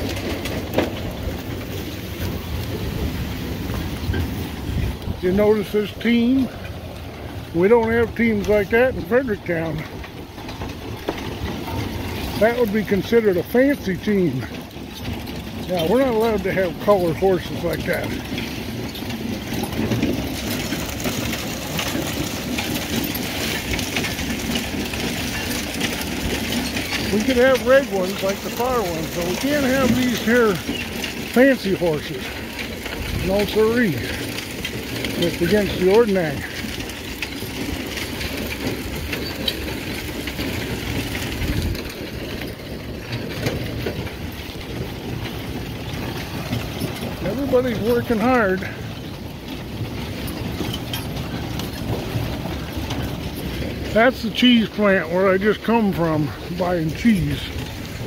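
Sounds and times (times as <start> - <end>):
harvester engine running: 0.0 - 58.0
mechanical clatter: 0.0 - 58.0.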